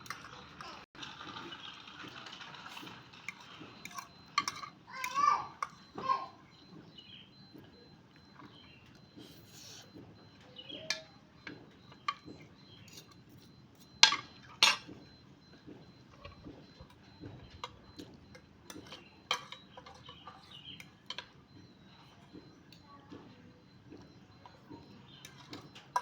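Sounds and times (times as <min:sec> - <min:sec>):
utensils clinking against dish: 0:00.0 - 0:05.8, 0:10.8 - 0:15.1, 0:17.4 - 0:21.4, 0:24.4 - 0:26.0.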